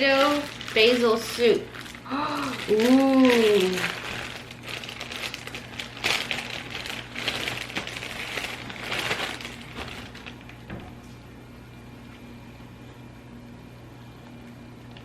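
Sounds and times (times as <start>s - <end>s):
packaging rustling and crinkling: 0.0s - 10.8s.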